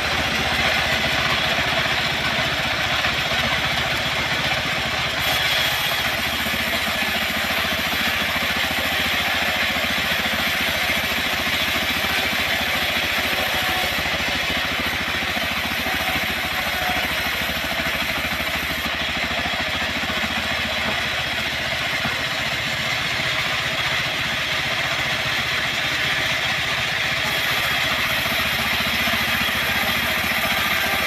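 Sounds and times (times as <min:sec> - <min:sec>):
engine running steadily: 0:00.0 - 0:31.0.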